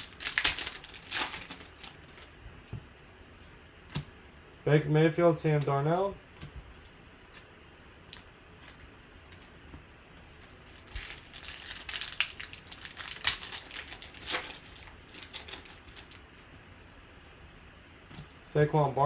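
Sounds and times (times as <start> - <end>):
cards and packaging crinkling: 0.0 - 2.4, 10.3 - 16.3.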